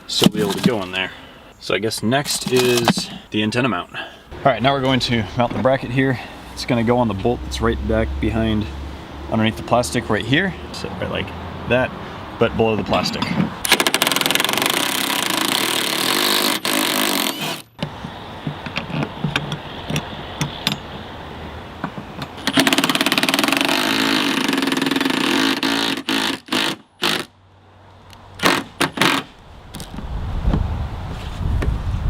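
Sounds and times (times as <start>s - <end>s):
impact driver hammering rattle: 13.6s - 17.7s, 22.3s - 27.3s, 28.4s - 29.3s
sharp clicks and knocks: 17.8s - 20.9s, 21.8s - 23.7s.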